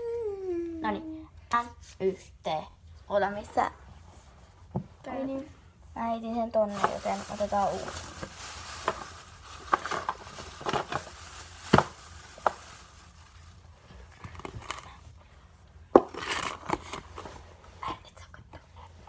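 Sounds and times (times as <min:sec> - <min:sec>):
crinkling: 0:06.7 - 0:15.0.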